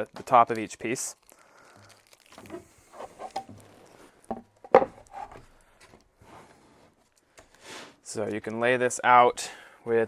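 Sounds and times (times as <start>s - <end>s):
wooden panels knocking and rubbing: 4.3s - 5.4s.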